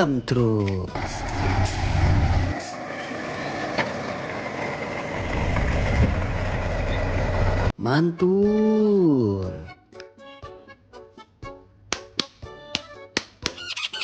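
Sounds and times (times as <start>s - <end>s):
large truck engine rumbling: 0.9s - 7.7s.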